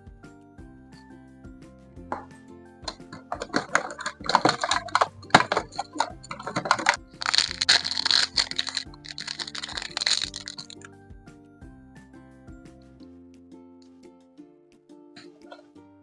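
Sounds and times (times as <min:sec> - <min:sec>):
soft background music: 0:00.0 - 0:16.0
plastic packaging crinkling: 0:02.9 - 0:10.9.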